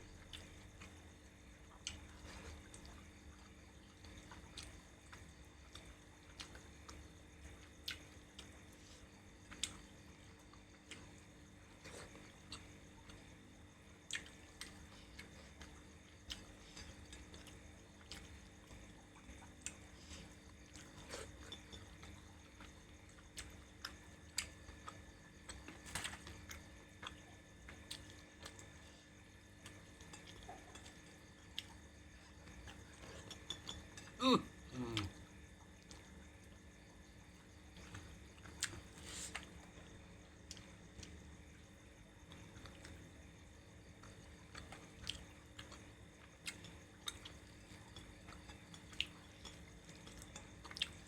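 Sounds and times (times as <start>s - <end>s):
faint steady hum: 0.0s - 51.0s
person chewing: 14.1s - 22.7s, 37.8s - 39.5s, 44.5s - 45.8s, 46.4s - 51.0s.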